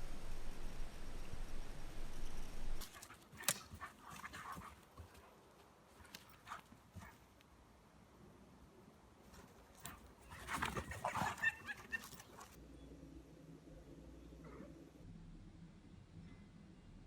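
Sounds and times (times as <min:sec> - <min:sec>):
steady low rumble: 0:00.0 - 0:02.9.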